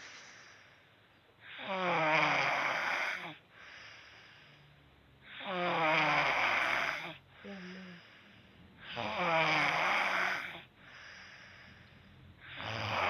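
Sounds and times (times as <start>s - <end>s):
quiet breath: 0.0s - 1.8s, 3.2s - 5.4s, 7.0s - 9.0s, 10.4s - 12.6s
girl snoring loudly: 1.5s - 3.4s, 5.3s - 8.0s, 8.9s - 10.7s, 12.5s - 13.0s.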